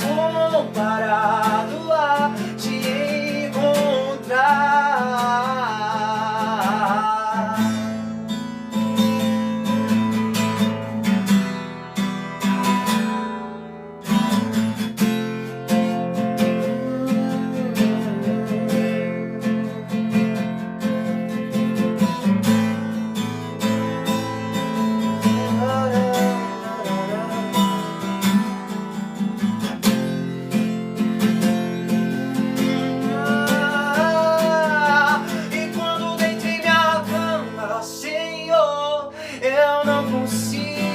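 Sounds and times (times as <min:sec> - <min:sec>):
acoustic guitar strumming chords: 0:00.0 - 0:40.9.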